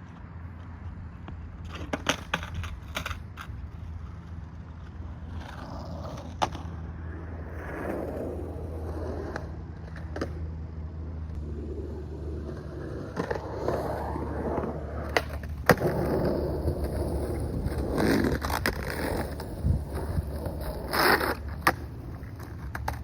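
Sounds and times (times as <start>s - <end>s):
skateboard wheels rumbling: 0.0s - 23.0s
skateboard clacks: 1.2s - 3.9s, 11.4s - 23.0s.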